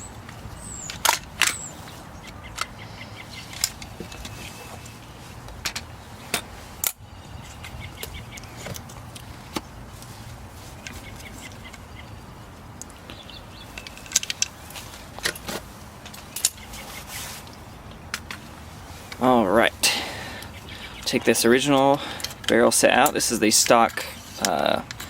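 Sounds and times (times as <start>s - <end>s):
rifle parts clicking: 13.8s - 16.6s.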